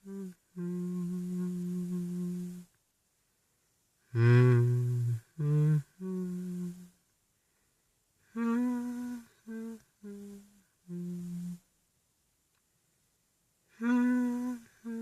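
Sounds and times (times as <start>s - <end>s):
man humming a slow tune: 0.0s - 2.8s, 4.0s - 7.0s, 8.2s - 11.7s, 13.7s - 15.0s.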